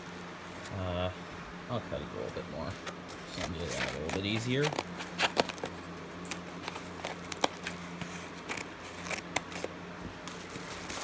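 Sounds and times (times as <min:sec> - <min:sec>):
blade cutting cardboard box: 0:03.2 - 0:09.7.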